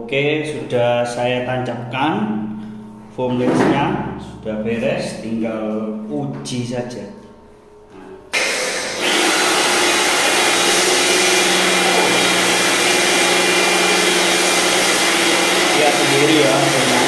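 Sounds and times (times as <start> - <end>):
pressure washer motor humming: 8.3 - 17.0.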